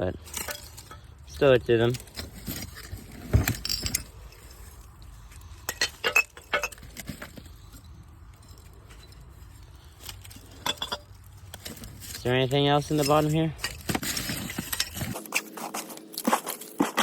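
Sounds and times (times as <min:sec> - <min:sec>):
glass jars and bottles clinking: 0:02.0 - 0:04.2, 0:05.6 - 0:09.3, 0:10.4 - 0:12.2.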